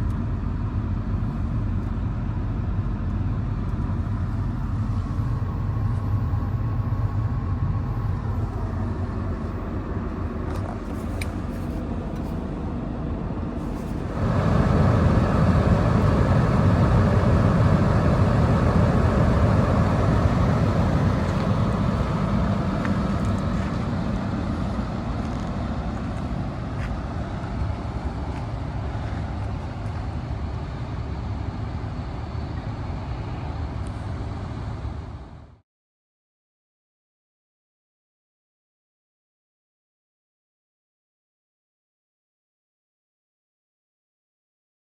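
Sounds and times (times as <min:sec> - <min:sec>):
excavator diesel engine running: 0:00.2 - 0:34.9.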